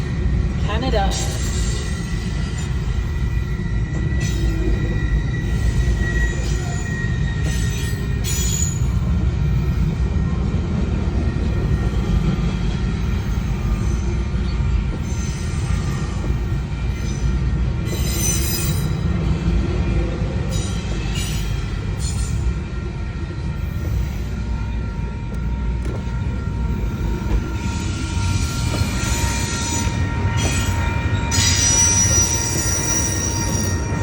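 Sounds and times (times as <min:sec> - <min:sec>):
train wheels rumbling on rail: 0:00.0 - 0:34.0
high wheel squeal: 0:01.4 - 0:09.9, 0:15.0 - 0:19.1, 0:26.7 - 0:34.0.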